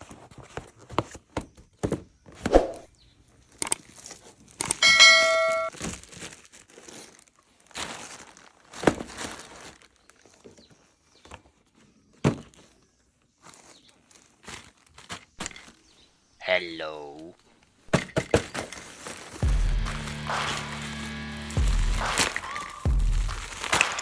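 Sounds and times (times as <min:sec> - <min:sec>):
ringing chime: 0:04.8 - 0:05.7.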